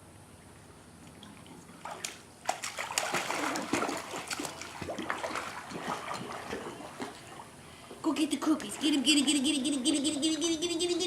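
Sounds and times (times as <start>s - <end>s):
water splashing in a pool: 1.1s - 9.7s.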